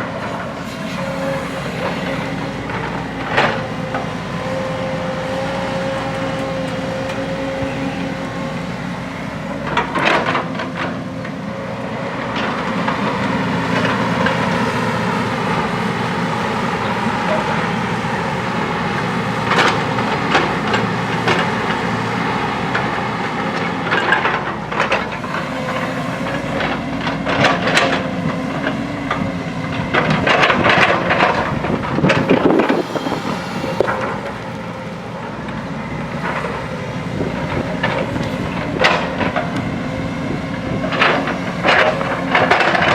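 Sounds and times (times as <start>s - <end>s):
diesel engine running: 0.0s - 42.9s
clanks and scraping knocks: 23.9s - 35.6s.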